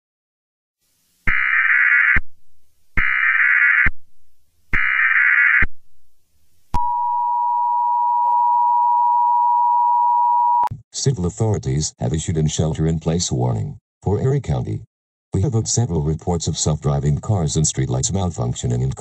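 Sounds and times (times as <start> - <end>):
buzzing data tone bursts: 1.3 - 2.2, 3.0 - 3.9, 4.7 - 5.7.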